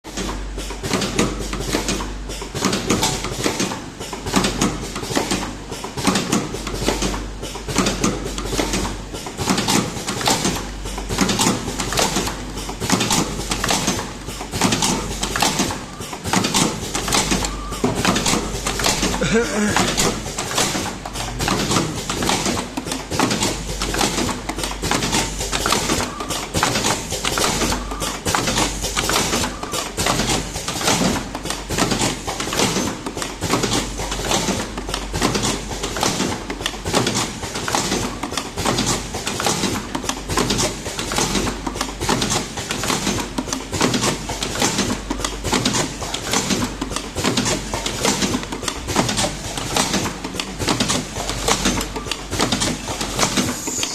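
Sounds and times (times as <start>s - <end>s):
machine rapid clatter: 0.1s - 53.9s
machine low hum: 6.5s - 29.4s.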